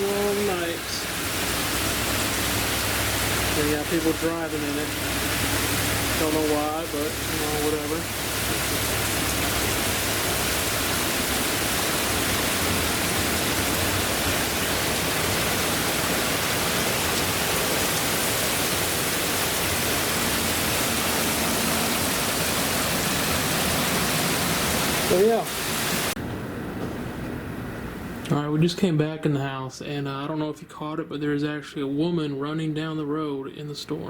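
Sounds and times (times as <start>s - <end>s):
heavy rain pouring: 0.0s - 26.2s.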